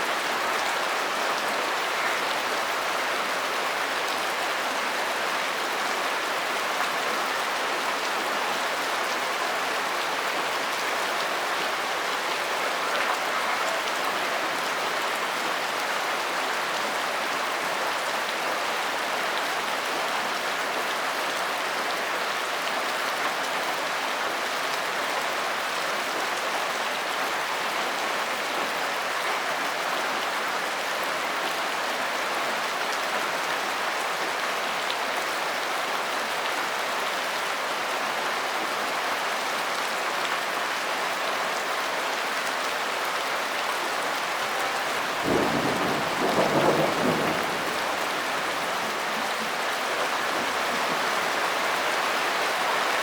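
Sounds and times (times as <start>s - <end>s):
steady rain hissing: 38.7s - 53.0s.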